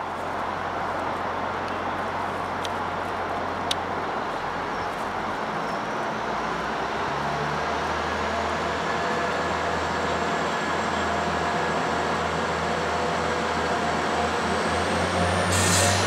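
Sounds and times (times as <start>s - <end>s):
train rumbling past: 5.5s - 16.0s
high-pitched metallic squeals: 15.3s - 16.0s.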